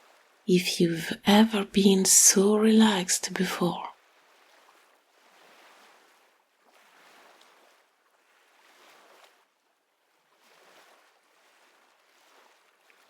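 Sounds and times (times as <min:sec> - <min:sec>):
faint ocean waves: 0:00.1 - 0:03.9.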